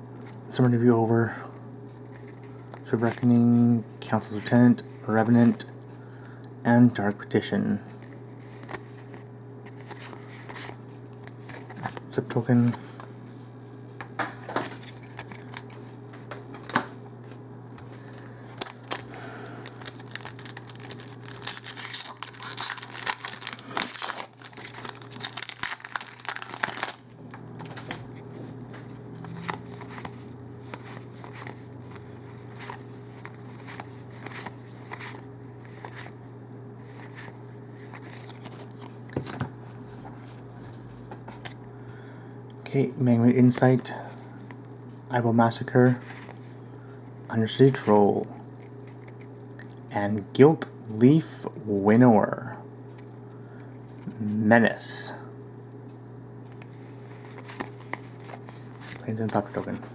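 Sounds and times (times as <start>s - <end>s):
steady low hum: 0.0s - 59.9s
cards being handled: 7.9s - 13.4s, 14.1s - 41.6s, 48.5s - 49.3s, 56.5s - 59.9s
foil wrapper crinkling and tearing: 18.5s - 27.1s.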